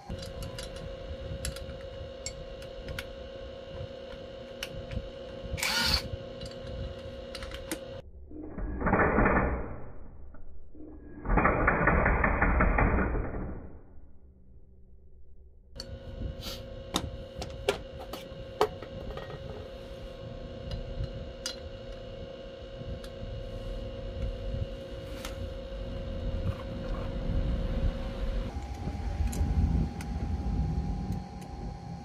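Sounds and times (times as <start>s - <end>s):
low rumble and hum: 0.0s - 32.0s.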